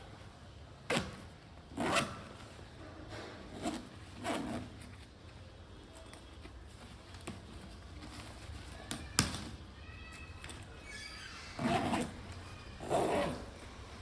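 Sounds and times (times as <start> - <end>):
bag zip rasping: 0.9 - 2.4, 3.5 - 4.9, 11.6 - 13.7.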